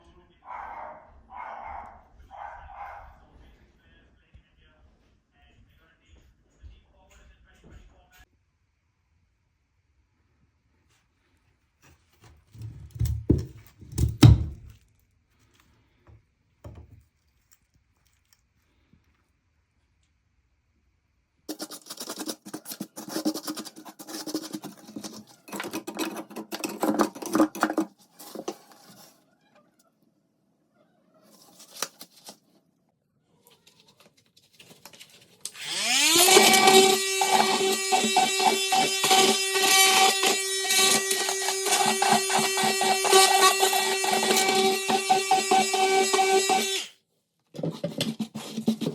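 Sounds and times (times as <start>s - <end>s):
tools scraping and clattering: 21.5s - 29.1s.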